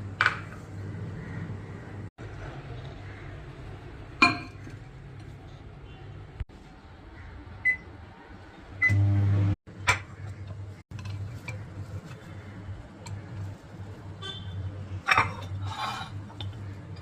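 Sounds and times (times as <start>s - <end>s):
microwave beeps: 7.6s - 7.9s, 8.8s - 9.5s
microwave humming: 8.8s - 9.6s.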